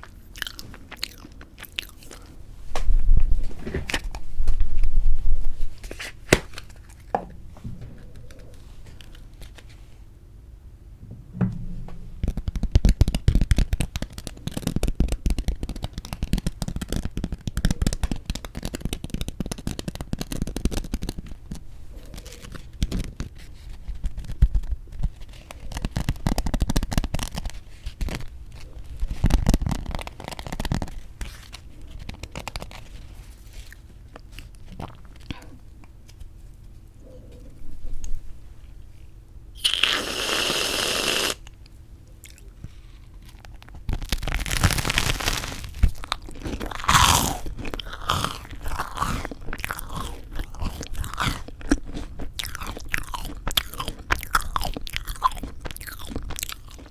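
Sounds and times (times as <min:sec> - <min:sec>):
chewing crunchy toast: 0:00.0 - 0:02.4, 0:12.8 - 0:36.0, 0:39.6 - 0:56.9.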